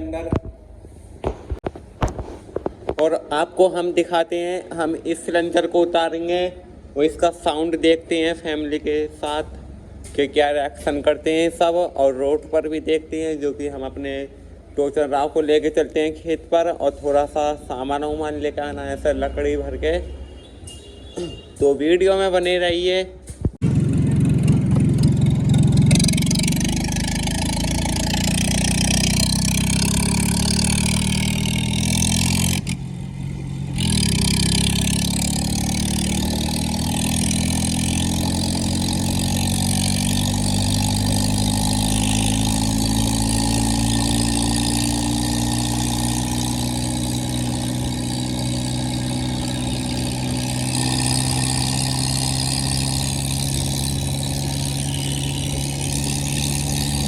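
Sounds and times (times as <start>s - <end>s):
tractor diesel engine running: 23.6s - 57.0s.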